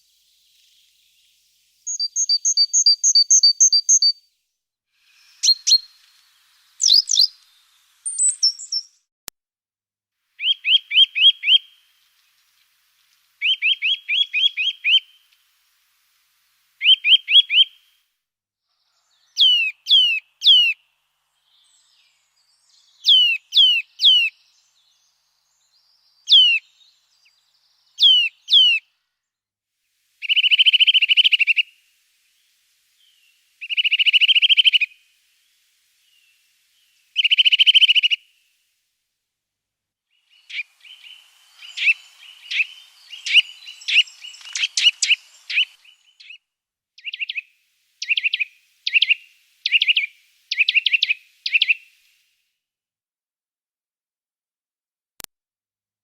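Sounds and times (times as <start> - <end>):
bird whistles sliding down: 0.0 - 4.2, 5.0 - 7.4, 8.0 - 9.0, 13.4 - 15.3, 16.8 - 17.8, 19.0 - 20.8, 21.4 - 24.4, 25.6 - 28.8, 30.2 - 38.6, 40.1 - 46.4, 47.0 - 52.4
songbirds calling: 0.0 - 4.2, 5.0 - 9.0, 10.4 - 15.5, 16.8 - 17.9, 18.8 - 29.0, 30.2 - 38.3, 40.1 - 46.4, 47.0 - 52.1.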